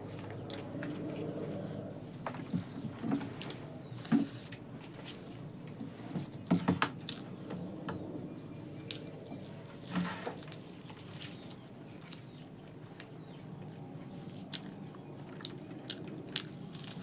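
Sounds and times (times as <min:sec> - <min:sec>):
person chewing wetly: 0:07.0 - 0:07.2, 0:08.8 - 0:09.5, 0:14.4 - 0:17.0.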